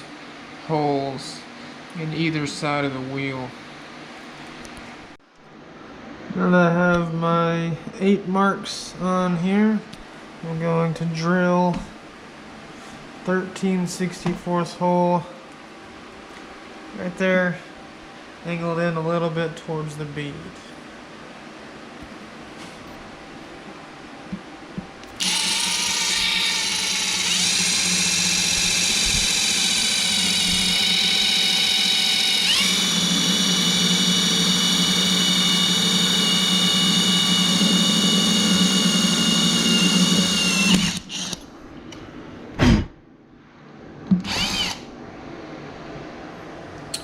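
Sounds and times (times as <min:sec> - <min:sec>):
electric drill whining: 0:25.2 - 0:41.4, 0:44.2 - 0:44.8.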